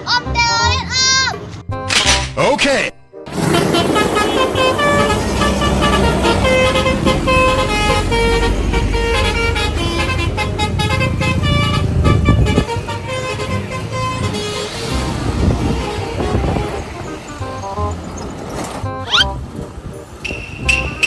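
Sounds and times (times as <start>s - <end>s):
multi-tone musical horn: 3.3s - 18.0s, 20.2s - 21.0s
low engine rumble: 3.3s - 21.0s.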